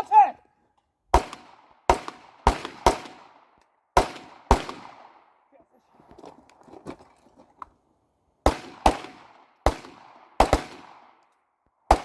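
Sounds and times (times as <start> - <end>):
gunshots with echo: 1.2 - 3.4, 4.0 - 5.2, 8.4 - 11.2.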